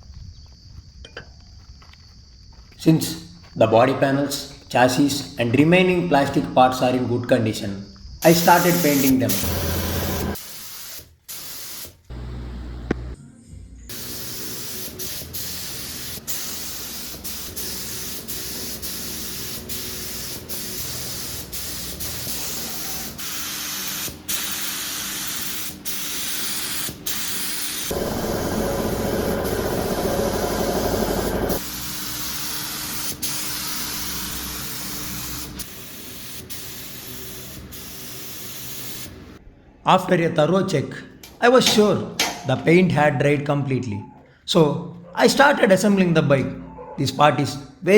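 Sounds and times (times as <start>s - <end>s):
spray paint hissing: 8.2s - 12.3s, 13.9s - 39.2s.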